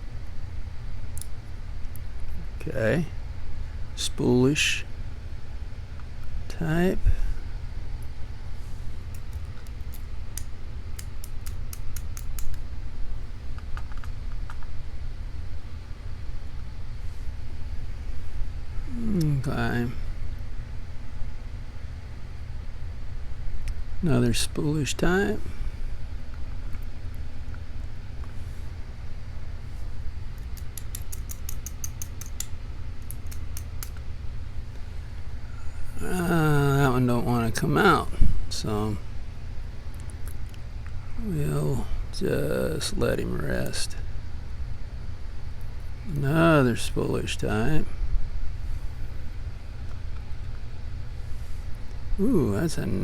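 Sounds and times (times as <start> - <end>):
steady low hum: 0.0 - 53.0
light metallic clicks and taps: 30.4 - 34.0.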